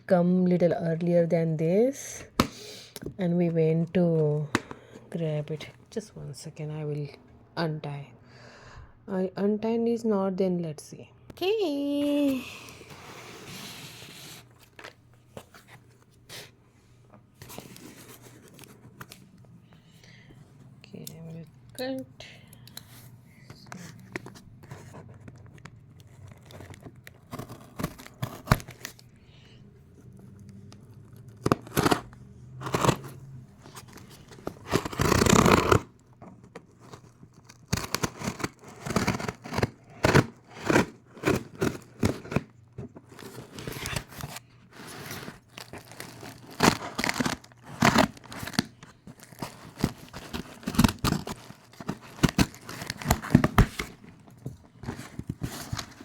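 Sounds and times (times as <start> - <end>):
package tearing: 25.4 - 29.0, 31.1 - 33.2, 33.8 - 42.5, 43.1 - 54.0.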